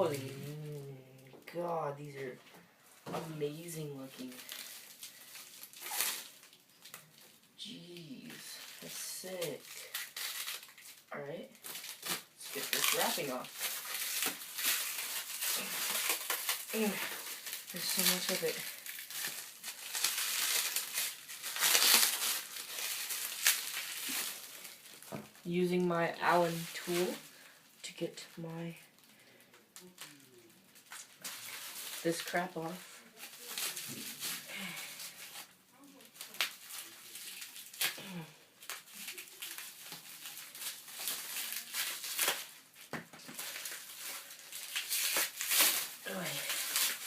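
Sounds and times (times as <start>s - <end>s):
packing wrap crinkling and tearing: 0.0s - 2.3s, 3.0s - 47.0s
tape being peeled off: 4.3s - 7.4s, 8.8s - 25.2s, 33.2s - 38.0s, 38.6s - 47.0s.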